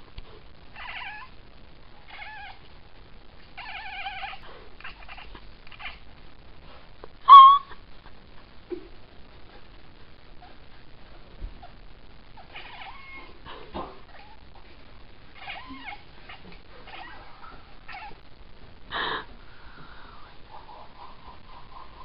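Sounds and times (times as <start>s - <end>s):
cat chattering: 2.1s - 2.7s, 3.6s - 6.1s, 7.3s - 7.8s, 12.4s - 13.3s, 15.4s - 18.2s.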